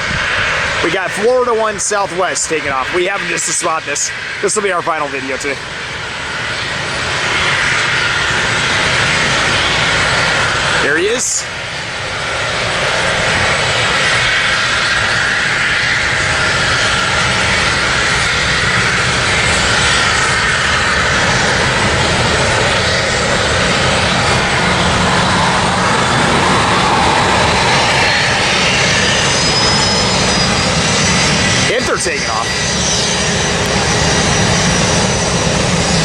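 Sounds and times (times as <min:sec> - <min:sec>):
jet engines running: 0:00.0 - 0:36.0.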